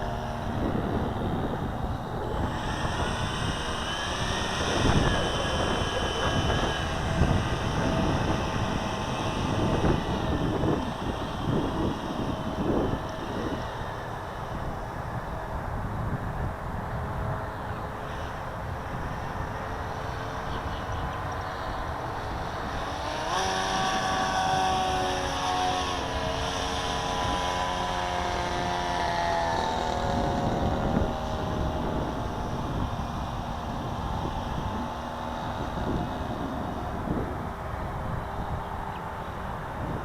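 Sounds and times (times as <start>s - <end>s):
electric motor and propeller whining: 0.0s - 40.0s
wind noise on microphone: 0.0s - 40.0s.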